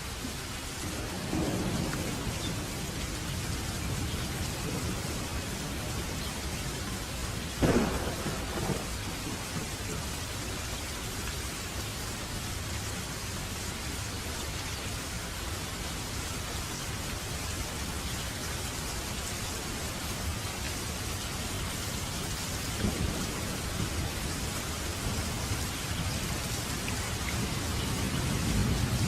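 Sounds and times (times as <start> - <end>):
rain falling: 0.0 - 29.0
thunder rumbling: 0.9 - 10.1, 22.7 - 29.0
sharp thunderclap: 7.6 - 9.7, 22.8 - 24.1.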